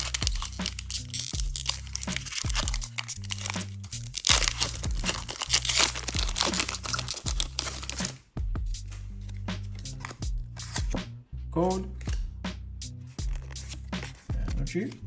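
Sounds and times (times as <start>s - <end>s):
foil wrapper crinkling and tearing: 0.0s - 8.2s, 13.1s - 14.3s
background music with bass: 0.0s - 15.0s.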